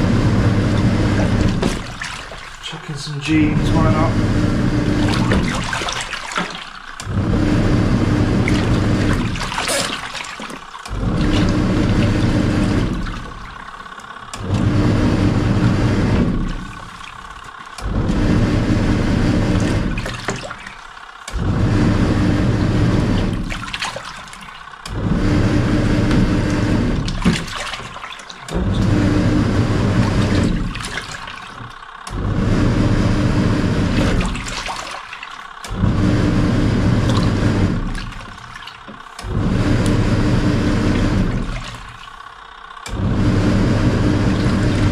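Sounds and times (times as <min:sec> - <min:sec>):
washing machine motor humming: 0:00.0 - 0:44.9
water sloshing in tub: 0:00.4 - 0:32.8, 0:33.4 - 0:44.9.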